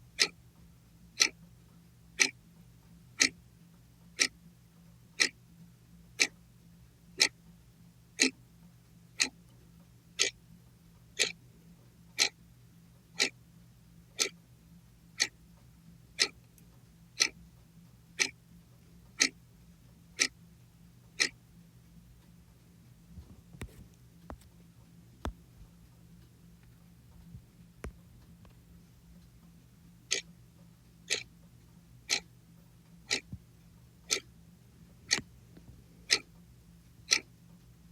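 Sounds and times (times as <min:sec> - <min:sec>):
clock ticking: 0:00.1 - 0:00.4, 0:01.2 - 0:01.4, 0:02.2 - 0:02.4, 0:03.1 - 0:03.4, 0:04.1 - 0:04.4, 0:05.2 - 0:05.4, 0:06.1 - 0:06.4, 0:07.2 - 0:07.4, 0:08.2 - 0:08.4, 0:09.2 - 0:09.5, 0:10.2 - 0:10.4, 0:11.2 - 0:11.4, 0:12.2 - 0:12.4, 0:13.2 - 0:13.4, 0:14.2 - 0:14.4, 0:15.2 - 0:15.4, 0:16.2 - 0:16.5, 0:17.2 - 0:17.4, 0:18.2 - 0:18.4, 0:19.1 - 0:19.4, 0:20.2 - 0:20.4, 0:21.1 - 0:21.4, 0:29.2 - 0:30.4, 0:31.0 - 0:37.7.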